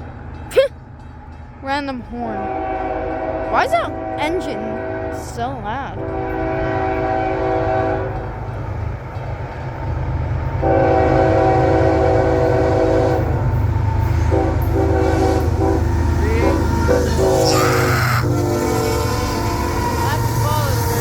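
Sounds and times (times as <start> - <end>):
low rumble of train engines: 0.0 - 21.0
locomotive air horn blasts: 2.4 - 5.2, 6.0 - 8.2, 10.6 - 13.4, 14.2 - 20.8.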